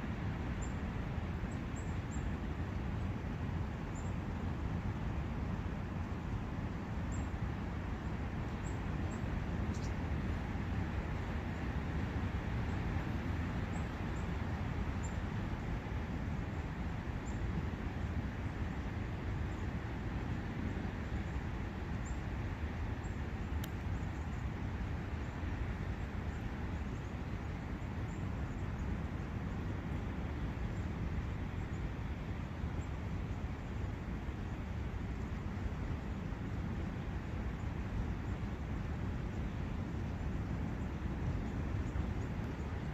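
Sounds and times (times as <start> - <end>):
faint bird chirps: 8.6 - 10.0.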